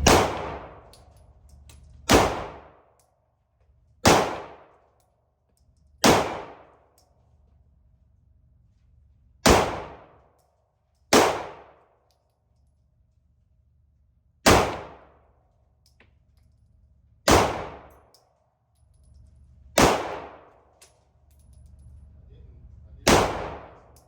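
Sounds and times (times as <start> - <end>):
pistol shots with echo: 0.0 - 0.9, 2.1 - 2.8, 4.0 - 4.7, 6.0 - 6.7, 9.4 - 10.2, 11.1 - 11.8, 14.4 - 15.2, 17.3 - 17.9, 19.8 - 20.6, 23.1 - 24.0.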